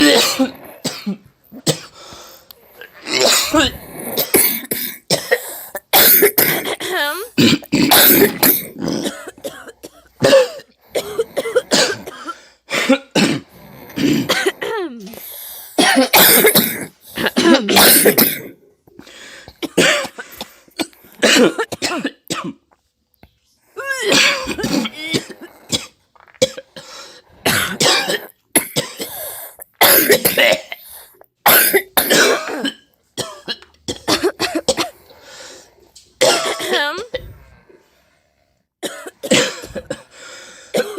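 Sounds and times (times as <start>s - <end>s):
person clearing throat: 0.0s - 2.0s, 3.0s - 15.2s, 15.8s - 18.6s, 23.8s - 26.7s, 27.5s - 29.2s, 31.5s - 35.0s, 36.2s - 37.4s, 38.8s - 40.1s
person coughing: 0.0s - 2.1s, 3.0s - 15.2s, 15.8s - 18.6s, 19.6s - 22.6s, 23.8s - 35.0s, 36.2s - 37.5s, 38.8s - 40.9s.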